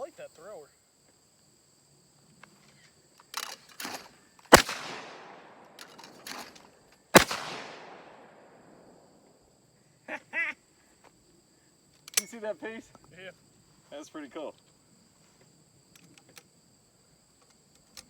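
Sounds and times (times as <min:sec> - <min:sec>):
shotgun shots with echo: 0:04.5 - 0:06.5, 0:07.2 - 0:09.0.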